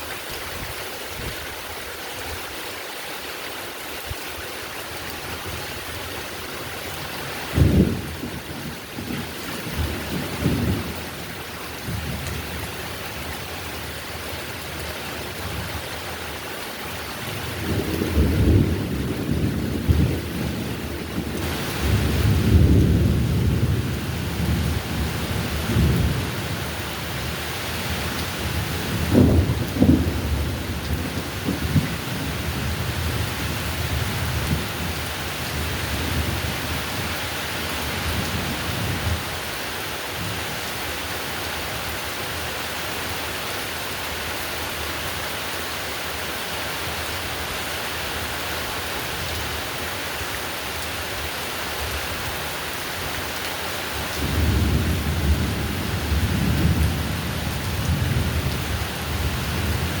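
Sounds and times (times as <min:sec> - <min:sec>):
heavy rain falling: 0:00.0 - 1:00.0
rolling thunder: 0:17.5 - 0:26.6, 0:28.4 - 0:35.0, 0:54.2 - 1:00.0.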